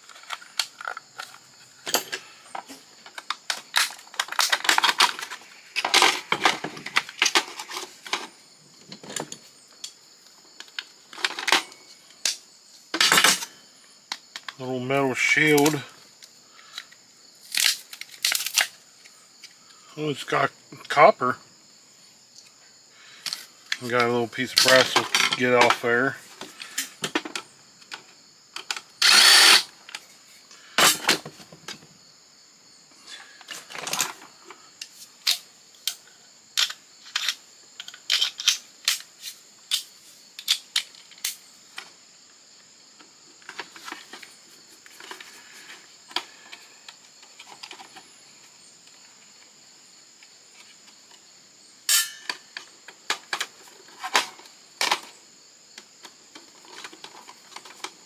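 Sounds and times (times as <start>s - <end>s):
clicks and clinks of parts and tools: 0.0s - 8.3s, 10.6s - 12.4s, 13.0s - 14.6s, 23.2s - 30.0s, 33.1s - 41.9s, 51.9s - 55.2s, 55.8s - 58.0s.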